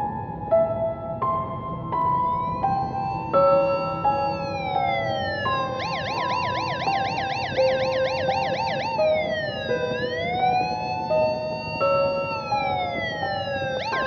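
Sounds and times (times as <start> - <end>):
electronic siren wailing and yelping: 2.4 - 14.0
steady electronic tones: 3.4 - 14.0.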